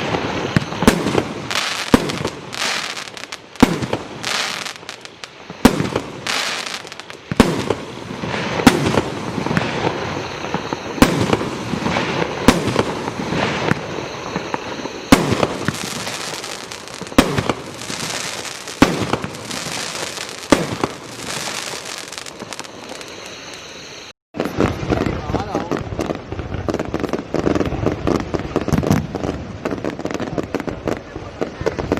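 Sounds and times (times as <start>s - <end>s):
firework crackling: 0.0s - 31.9s
firework reports: 0.0s - 31.9s.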